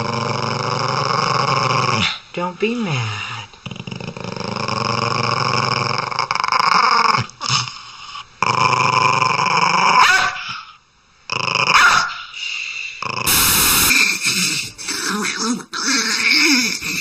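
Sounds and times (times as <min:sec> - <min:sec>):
dog growling: 0:00.0 - 0:02.2, 0:03.5 - 0:10.7, 0:11.3 - 0:12.3, 0:13.0 - 0:17.0.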